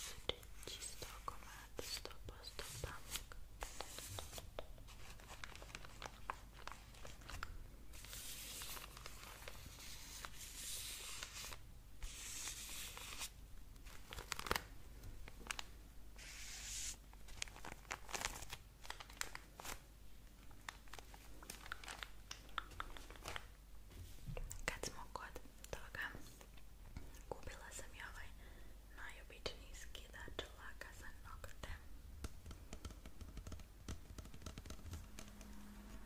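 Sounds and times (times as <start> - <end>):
packaging crinkling and tearing: 5.0 - 11.6, 12.8 - 15.7, 17.3 - 19.8, 20.5 - 23.5
small clicks and taps: 32.2 - 35.6.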